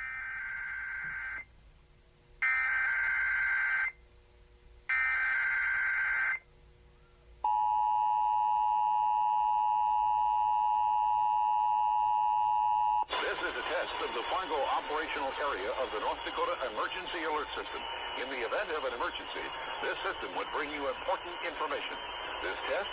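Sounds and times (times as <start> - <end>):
warbling data bursts: 13.1 - 22.9.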